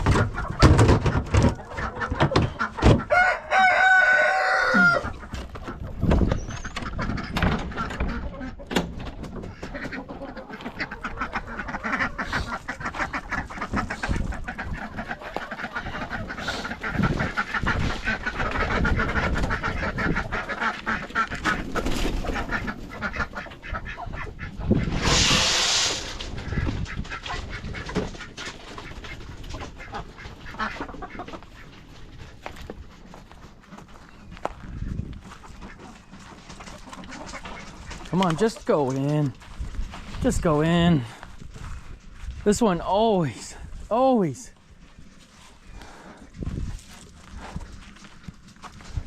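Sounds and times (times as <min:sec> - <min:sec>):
poultry quacking and clucking: 0:00.0 - 0:49.0
brief loud rush of noise: 0:24.8 - 0:26.3.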